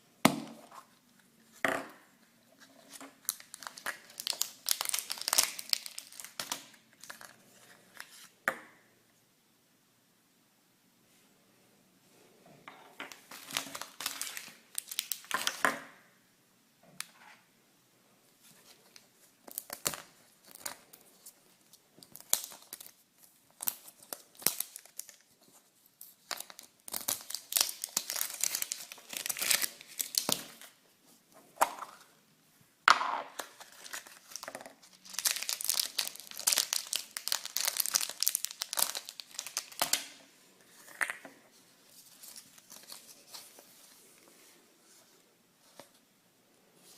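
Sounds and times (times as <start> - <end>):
wrapping crinkling and tearing: 2.9 - 7.4, 13.1 - 15.6, 19.4 - 30.7, 33.4 - 40.2, 41.9 - 43.8.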